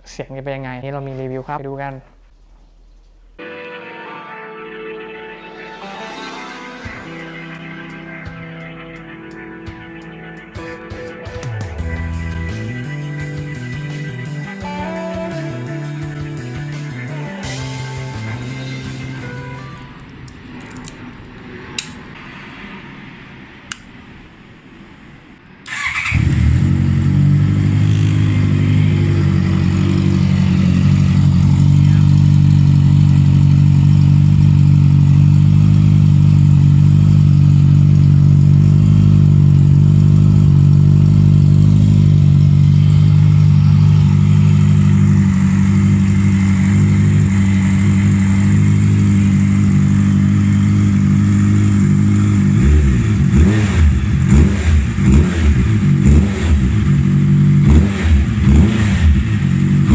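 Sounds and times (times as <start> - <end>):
motorcycle engine starting and idling: 25.7 - 59.9.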